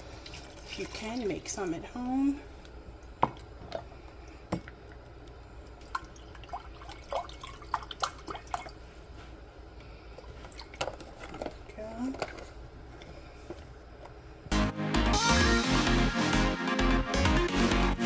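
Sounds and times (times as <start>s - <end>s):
liquid dripping and plopping: 3.0s - 8.8s.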